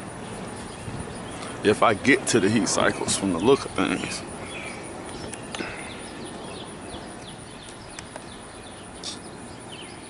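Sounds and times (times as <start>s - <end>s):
small birds chirping: 0.0s - 10.0s
faint sharp clicks: 7.2s - 8.3s.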